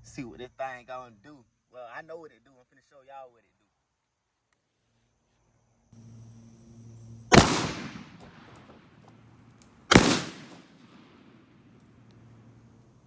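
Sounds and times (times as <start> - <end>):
shotgun shots with echo: 7.3 - 9.0, 9.9 - 11.7.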